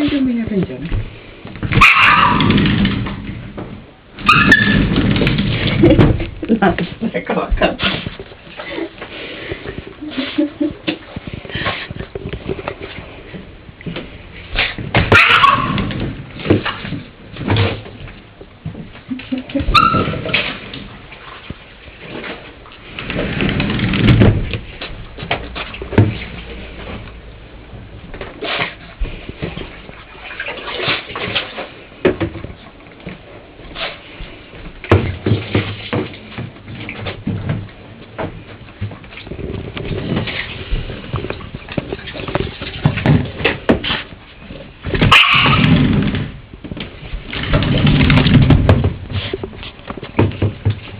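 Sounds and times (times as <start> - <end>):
dog scrabbling and scratching: 1.6 - 3.5, 4.2 - 8.4, 39.1 - 50.9.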